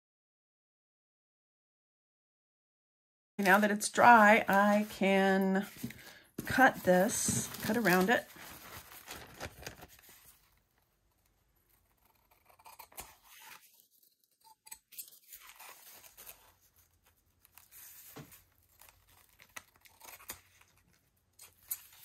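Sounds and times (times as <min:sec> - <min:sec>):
paper rustling: 0:03.4 - 0:14.2, 0:15.1 - 0:22.0
scissors snipping paper: 0:11.2 - 0:22.0.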